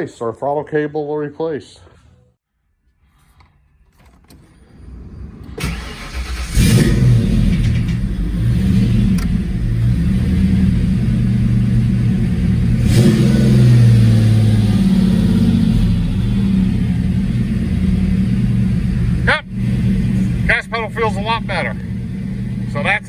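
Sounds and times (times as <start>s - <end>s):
car engine revving: 5.3s - 23.0s.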